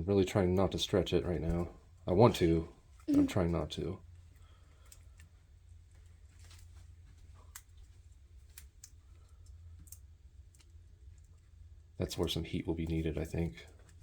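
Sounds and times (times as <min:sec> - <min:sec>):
low steady hum: 0:00.0 - 0:14.0
faint clicks and crinkling: 0:00.1 - 0:14.0.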